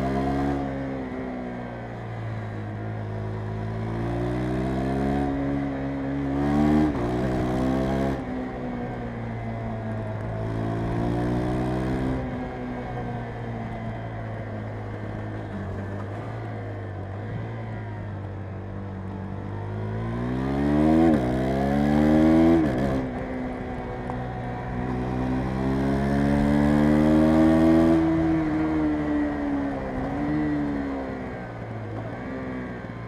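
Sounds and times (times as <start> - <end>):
motorcycle engine revving: 24.6 - 32.6.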